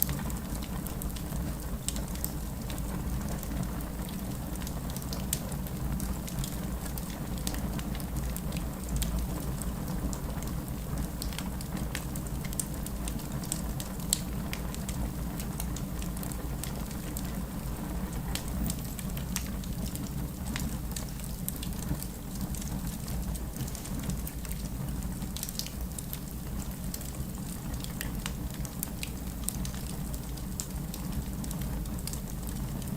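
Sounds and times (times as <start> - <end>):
fire crackling and popping: 0.0 - 32.9
fire rumbling: 0.0 - 32.9.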